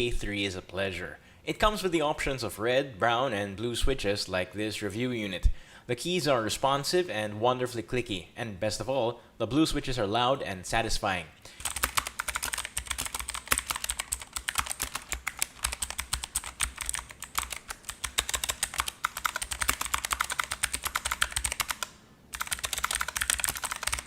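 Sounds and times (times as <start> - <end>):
mechanical keyboard typing clicks: 11.6 - 24.0.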